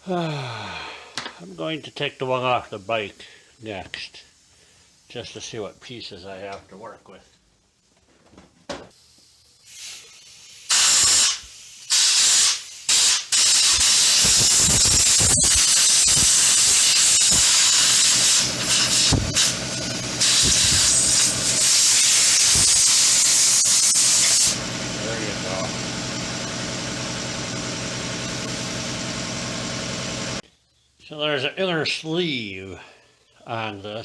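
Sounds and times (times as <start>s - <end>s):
compressed air blow gun hissing: 9.0s - 24.6s, 28.2s - 29.0s.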